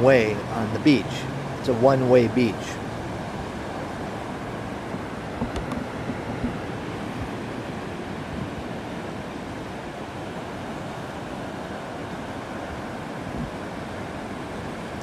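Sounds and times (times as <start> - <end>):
surf washing onto beach: 0.0 - 15.0
wind rumble on microphone: 3.0 - 15.0.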